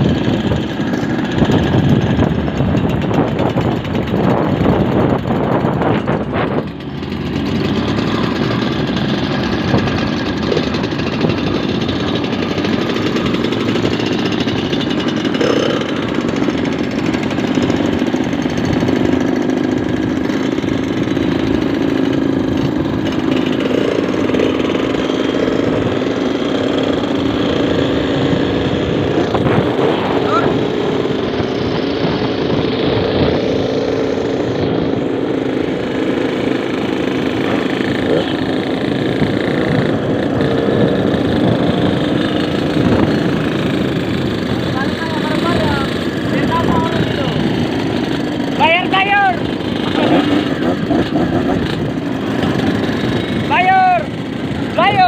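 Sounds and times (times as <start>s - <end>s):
two-stroke motorcycle running: 0.0s - 55.0s.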